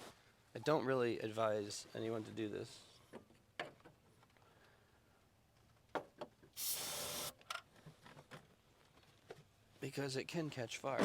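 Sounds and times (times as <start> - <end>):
aerosol spray hiss: 6.6 - 7.4.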